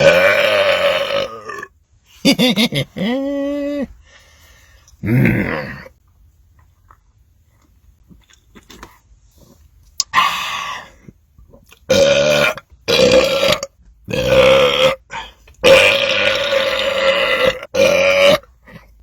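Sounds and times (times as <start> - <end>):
man belching loudly: 0.0 - 1.7, 5.0 - 5.9, 11.9 - 15.0, 15.6 - 18.5.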